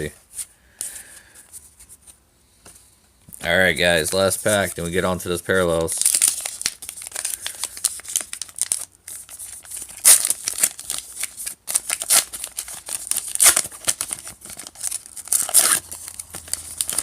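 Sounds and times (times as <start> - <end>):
card pack wrapper ripping: 5.7 - 17.0.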